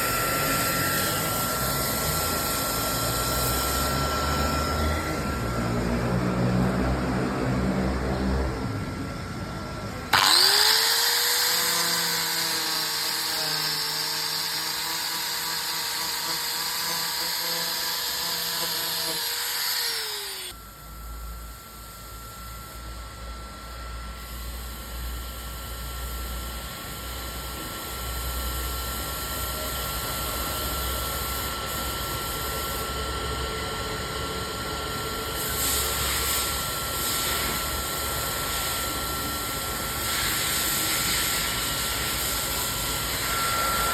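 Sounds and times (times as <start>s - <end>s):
power tool whining: 0.0s - 20.7s, 37.1s - 43.9s.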